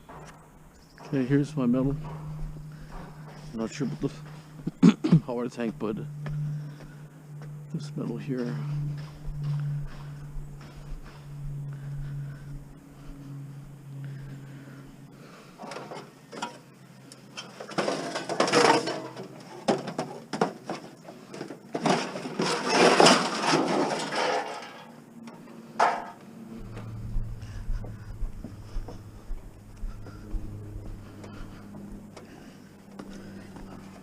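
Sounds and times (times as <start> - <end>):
scrap metal knocking and clattering: 17.4 - 25.0.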